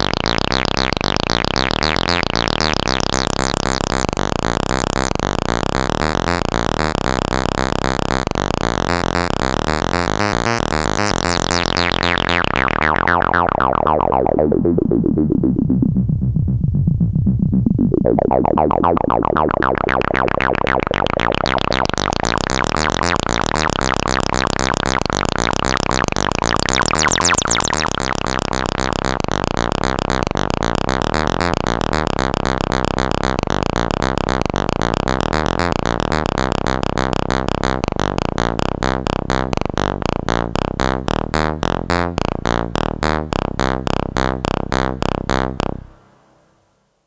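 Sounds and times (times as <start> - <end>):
synthesizer repeating note pattern: 9.2 - 28.9.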